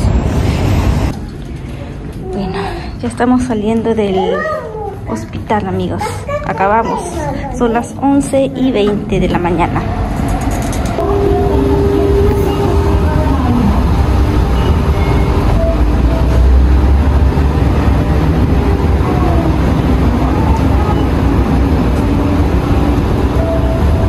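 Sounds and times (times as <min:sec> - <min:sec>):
low rumble of passing vehicles: 0:08.2 - 0:24.0.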